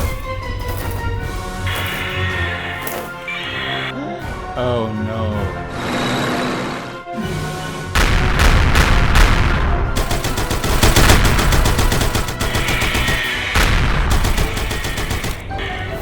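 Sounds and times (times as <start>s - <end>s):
rapid gunfire: 8.0s - 16.0s.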